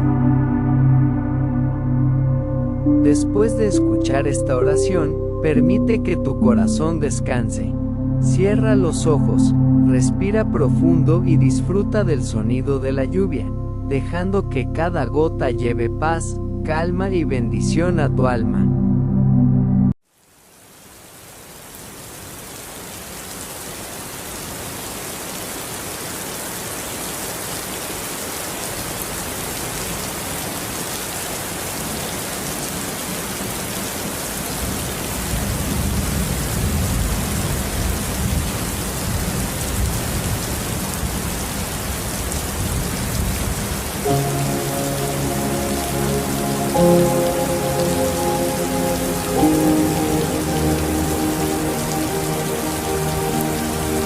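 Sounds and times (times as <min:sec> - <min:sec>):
soft sustained music tones: 0:00.0 - 0:20.0, 0:44.0 - 0:54.0
steady rain: 0:20.0 - 0:54.0.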